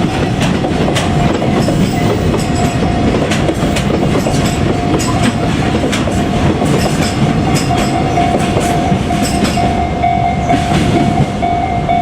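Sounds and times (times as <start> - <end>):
wheels clicking over rail joints: 0.0 - 9.7
freight train rolling past: 0.0 - 12.0
steady pitched tone: 7.7 - 12.0.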